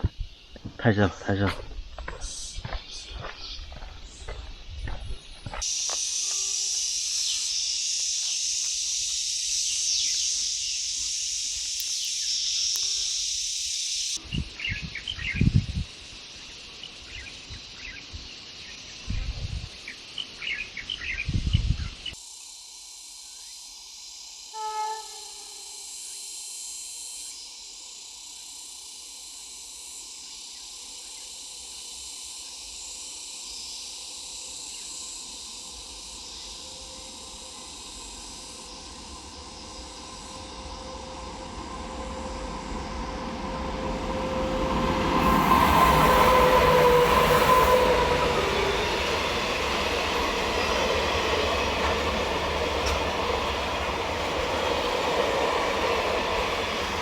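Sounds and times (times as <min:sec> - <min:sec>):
train rumbling past: 0:34.9 - 0:57.0.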